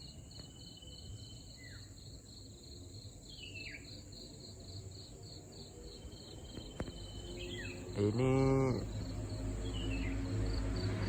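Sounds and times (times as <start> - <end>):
crickets chirping: 0.0 - 11.0.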